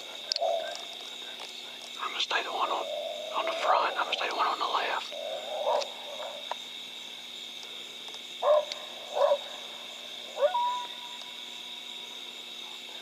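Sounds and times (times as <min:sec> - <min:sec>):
coyote barking: 0:02.0 - 0:06.5, 0:08.4 - 0:11.2
coyote howling: 0:02.6 - 0:03.7, 0:05.0 - 0:06.5, 0:08.4 - 0:11.2.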